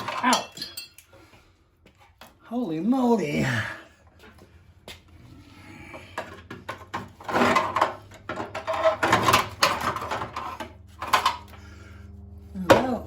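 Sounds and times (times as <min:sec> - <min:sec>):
clattering knocks and scrapes: 0:05.9 - 0:11.6.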